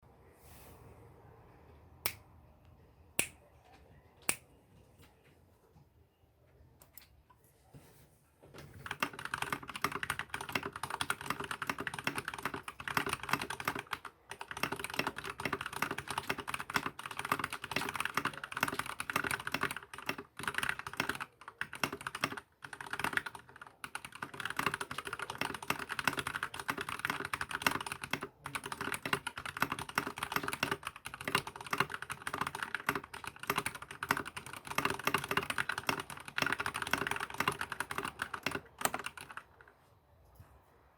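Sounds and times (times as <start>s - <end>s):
mechanical keyboard typing: 8.6s - 39.7s.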